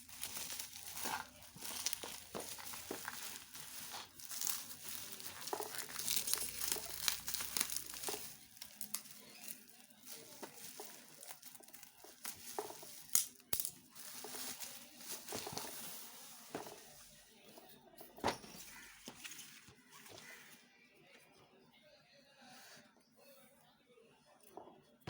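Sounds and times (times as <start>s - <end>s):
packaging crinkling and rustling: 0.0s - 17.2s.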